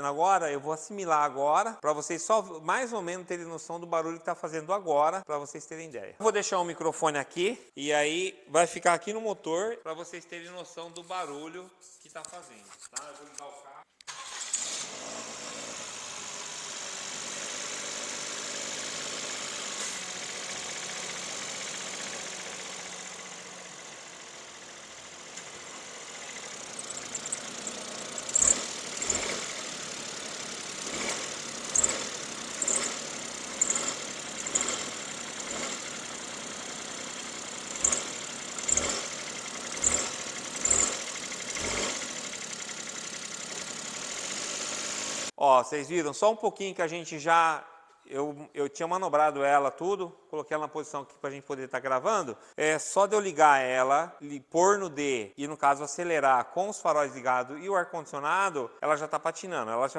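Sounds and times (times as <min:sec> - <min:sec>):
car engine running: 0:15.3 - 0:45.3
drive belt squeaking: 0:15.3 - 0:45.3.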